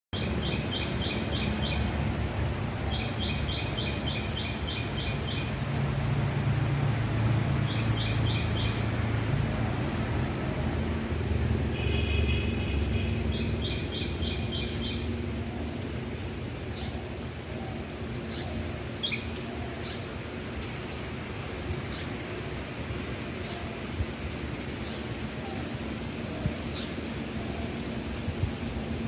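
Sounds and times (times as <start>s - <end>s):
wind rumbling over microphone: 12.9s - 29.0s.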